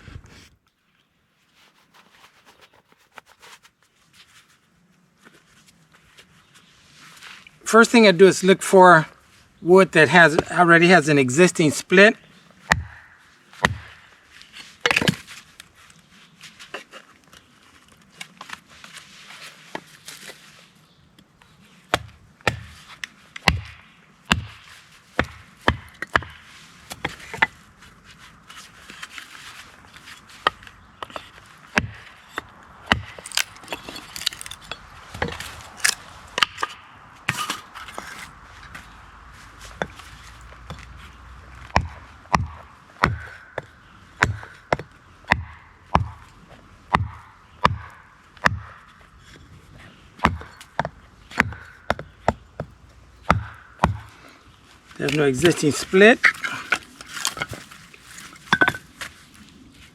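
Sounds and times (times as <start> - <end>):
wood cracking and splintering: 31.1 - 38.8, 56.2 - 58.8.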